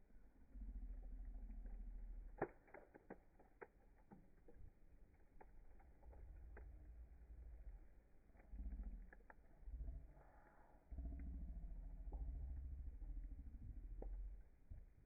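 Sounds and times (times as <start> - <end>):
low rumble: 0.0 - 2.4, 5.7 - 15.0
fire crackling: 0.1 - 10.3, 11.0 - 15.0.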